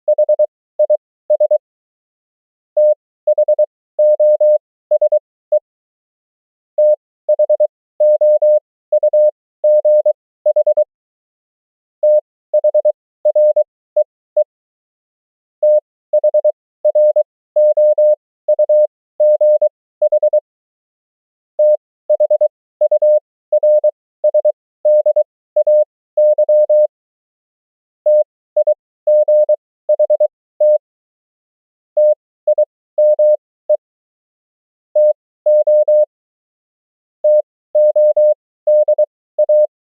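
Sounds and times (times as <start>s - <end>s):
morse code tone: 35.0s - 36.1s, 37.2s - 39.7s.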